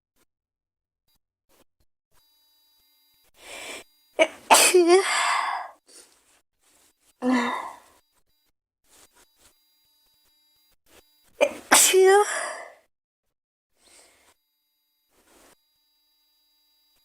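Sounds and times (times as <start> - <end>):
girl sneezing: 4.2 - 5.7, 11.4 - 12.7.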